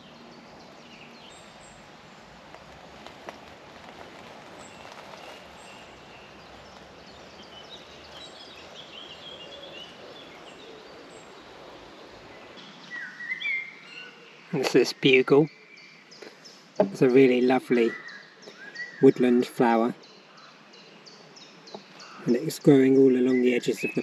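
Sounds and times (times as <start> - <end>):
songbird chirps and trills: 0.0 - 24.0
steady background hiss: 0.0 - 24.0
soft clicks and rustles: 2.4 - 8.8.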